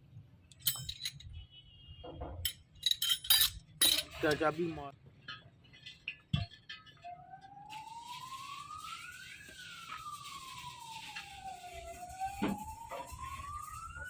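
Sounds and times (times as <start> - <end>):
siren wailing: 6.7 - 14.0.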